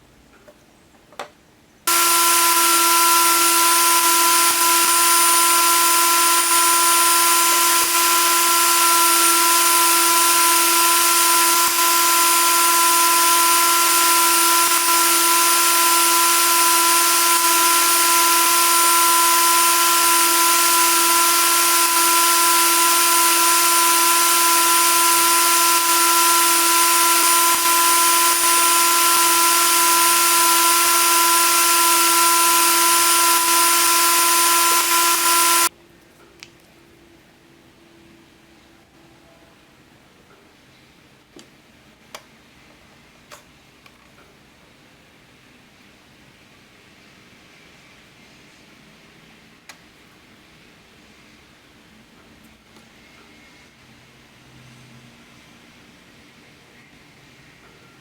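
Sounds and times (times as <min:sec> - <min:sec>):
power tool whining: 0:01.9 - 0:35.7.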